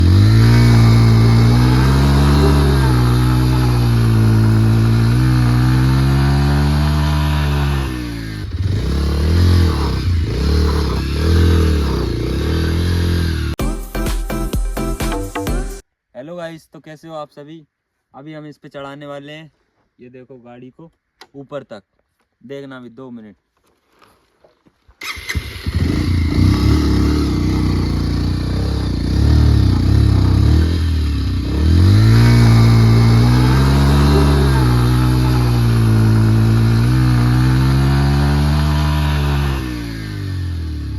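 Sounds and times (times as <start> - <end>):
motorcycle engine revving: 0.0 - 13.6, 25.0 - 40.9.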